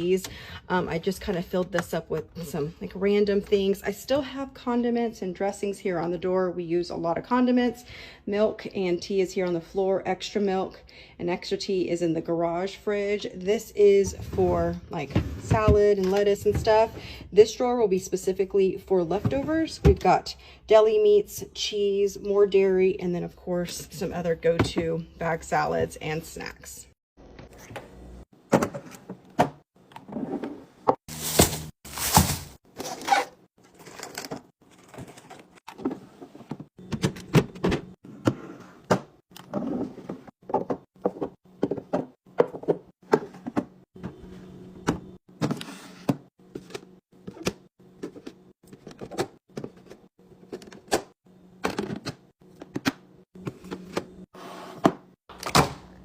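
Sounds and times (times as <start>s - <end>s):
packages rustling or sliding: 31.0s - 36.5s.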